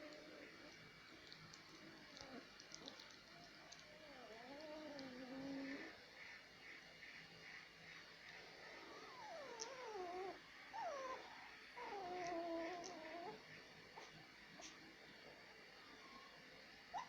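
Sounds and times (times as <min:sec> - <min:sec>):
puppy whining: 0:01.8 - 0:06.0, 0:08.7 - 0:14.8, 0:16.0 - 0:17.0.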